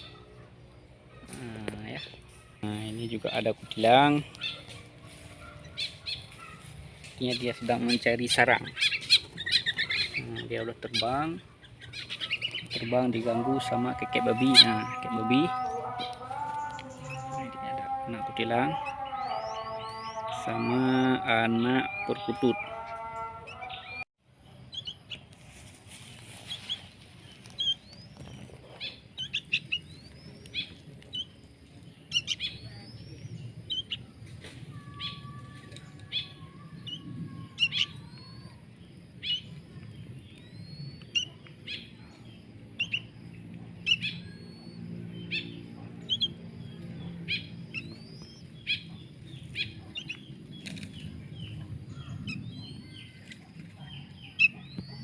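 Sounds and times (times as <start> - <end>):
birds chirping: 0.0 - 55.0.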